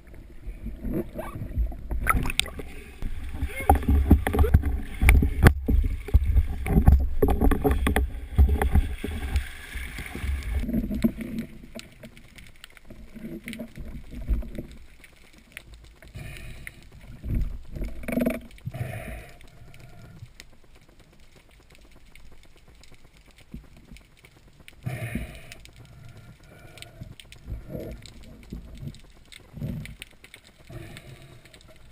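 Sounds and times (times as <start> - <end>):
water splashes: 0.0 - 18.6
water sloshing and gurgling: 0.0 - 31.9.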